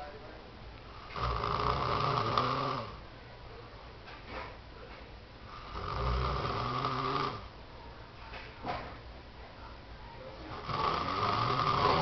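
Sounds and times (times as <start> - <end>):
man snoring: 1.0 - 3.0, 5.5 - 7.5, 10.5 - 12.0.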